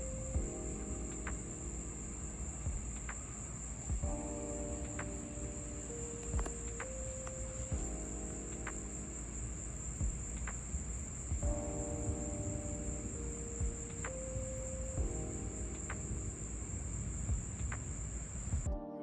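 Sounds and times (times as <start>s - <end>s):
crickets chirring: 0.0s - 18.7s
faint clicks: 2.9s - 3.4s, 5.9s - 7.6s.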